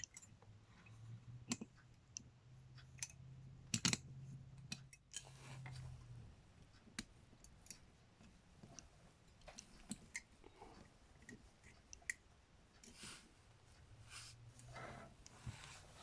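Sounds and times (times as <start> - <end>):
small metal parts clicking: 3.0 - 4.0
soft rustle: 5.2 - 6.8, 12.7 - 16.0.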